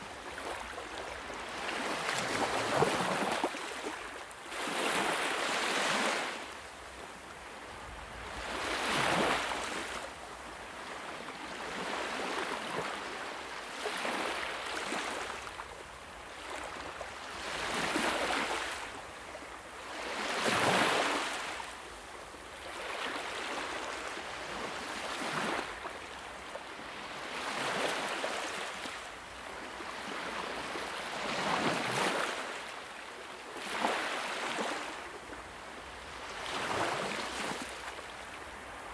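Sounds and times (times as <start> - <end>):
sea waves breaking on beach: 0.2 - 6.6, 8.2 - 10.1, 22.6 - 26.2.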